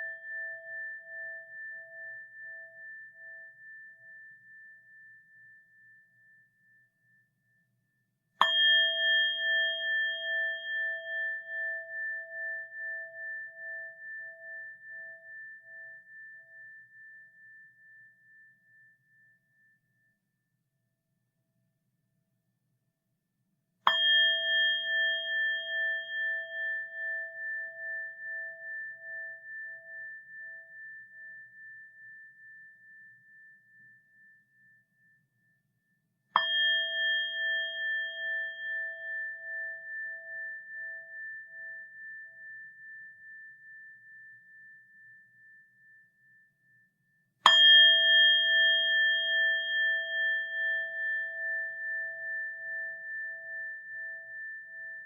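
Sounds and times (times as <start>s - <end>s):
metal bowl bell ringing: 8.4s - 17.8s, 23.9s - 33.1s, 36.4s - 44.6s, 47.5s - 55.0s.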